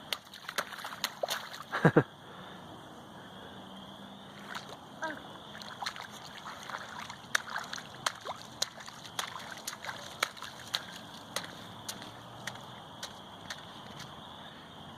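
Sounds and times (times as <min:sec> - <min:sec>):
footsteps splashing in puddle: 0:00.0 - 0:01.8, 0:04.3 - 0:04.8, 0:05.4 - 0:14.2.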